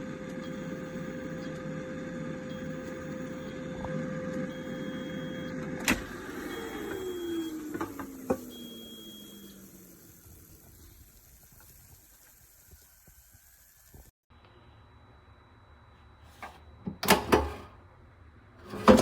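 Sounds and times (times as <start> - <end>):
air fryer fan humming: 0.0 - 14.0, 16.2 - 19.0.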